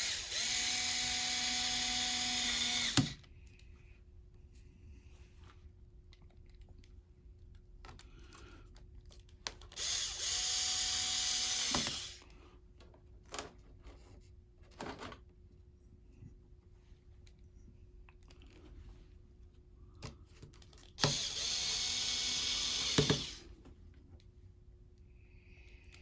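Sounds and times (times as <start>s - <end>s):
electric screwdriver running: 0.0s - 3.2s, 9.8s - 12.2s, 21.0s - 23.4s.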